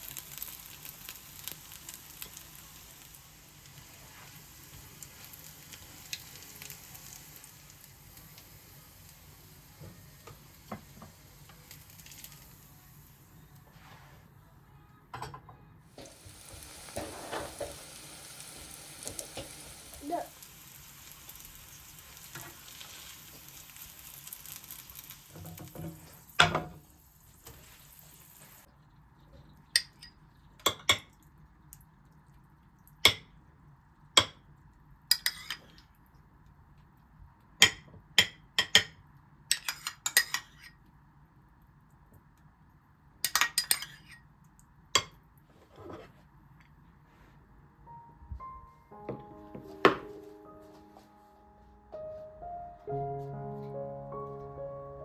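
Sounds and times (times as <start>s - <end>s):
food sizzling in oil: 0.0s - 13.3s, 16.0s - 28.7s
utensils clinking on dishes: 43.3s - 44.2s.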